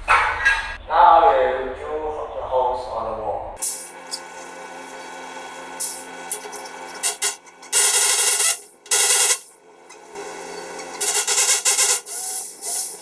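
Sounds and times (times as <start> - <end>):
electric drill grinding: 3.6 - 13.0.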